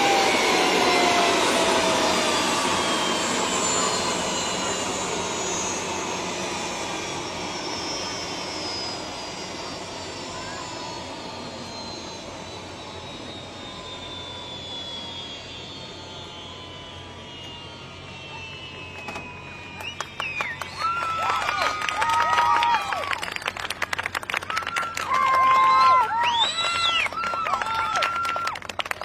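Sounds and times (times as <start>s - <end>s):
jet engine roar: 0.0s - 29.0s
jet engine whine: 0.0s - 29.0s.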